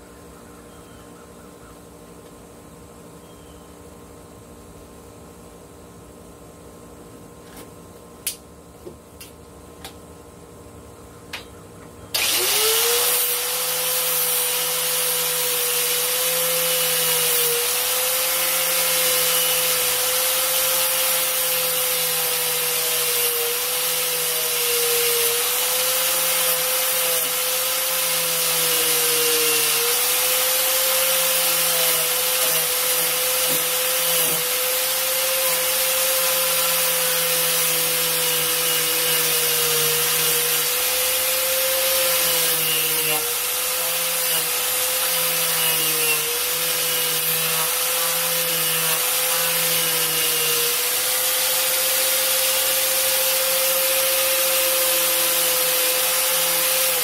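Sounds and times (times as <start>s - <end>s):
electric wire wheel whine: 12.1s - 57.0s.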